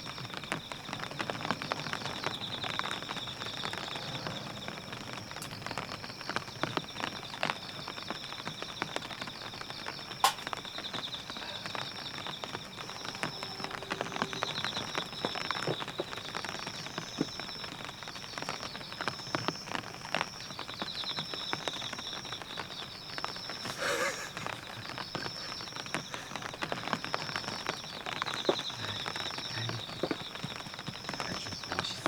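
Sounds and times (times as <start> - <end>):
raindrops tapping on a tent: 0.0 - 32.0
steady high-pitched trill: 12.1 - 16.6.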